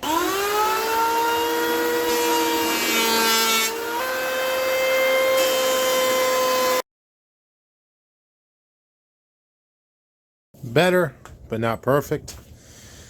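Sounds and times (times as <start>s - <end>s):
electric planer shaving wood: 0.0s - 6.8s.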